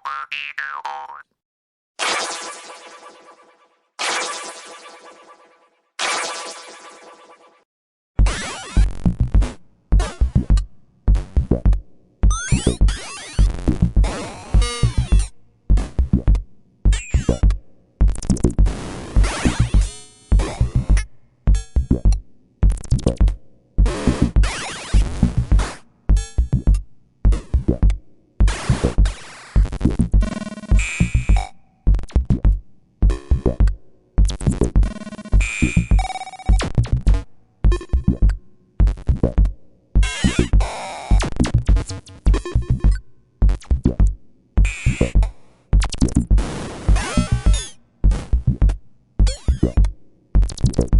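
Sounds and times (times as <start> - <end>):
cartoon boing sound effects: 0.0 - 1.3.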